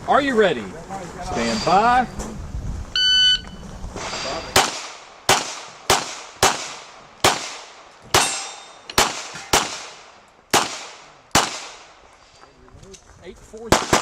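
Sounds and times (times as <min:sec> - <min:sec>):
pistol shots: 0:04.6 - 0:11.9, 0:13.7 - 0:14.0.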